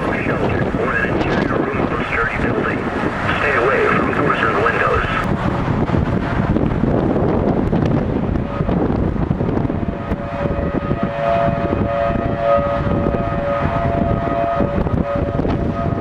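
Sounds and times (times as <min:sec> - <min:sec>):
wind and road noise: 0:00.0 - 0:16.0
two-note warning siren: 0:09.5 - 0:16.0.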